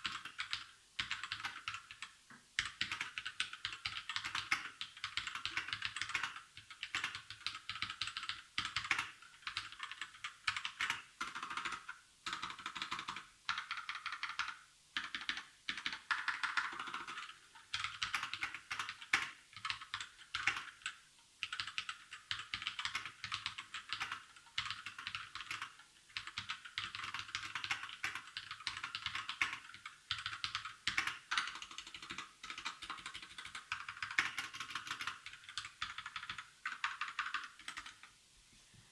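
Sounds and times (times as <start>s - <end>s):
mechanical keyboard typing: 0.0s - 38.1s.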